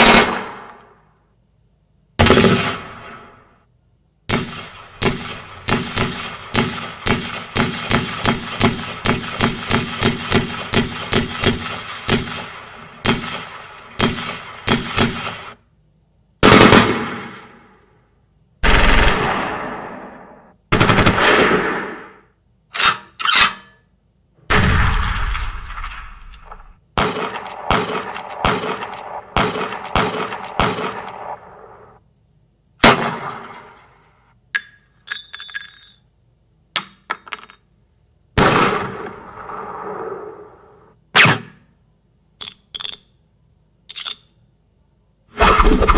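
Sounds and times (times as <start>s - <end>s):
gunshots with echoing tails: 4.3s - 15.6s, 18.6s - 22.2s, 24.5s - 32.0s, 38.4s - 41.4s
rapid gunshots: 4.3s - 15.6s, 18.6s - 19.9s, 20.7s - 22.0s, 24.5s - 32.0s, 45.4s - 45.9s
high metallic clinks and ringing: 34.5s - 36.1s.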